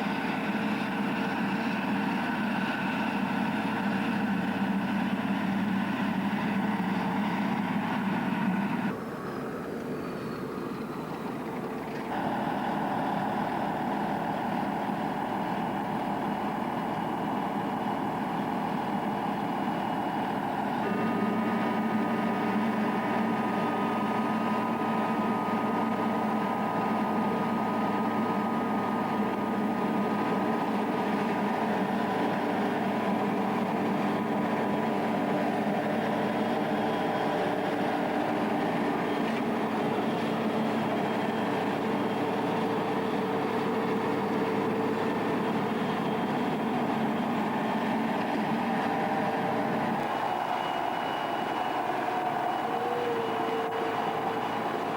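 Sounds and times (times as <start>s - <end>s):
harvester engine running: 0.0s - 54.9s
high mechanical whine: 0.0s - 54.9s.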